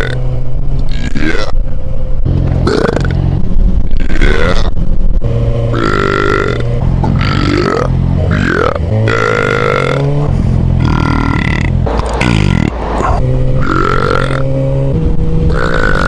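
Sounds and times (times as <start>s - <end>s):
man belching loudly: 0.0s - 0.2s, 0.9s - 1.6s, 2.6s - 3.2s, 3.9s - 4.8s, 5.7s - 10.1s, 10.8s - 14.5s, 15.5s - 16.0s
motorcycle engine running: 0.0s - 16.0s.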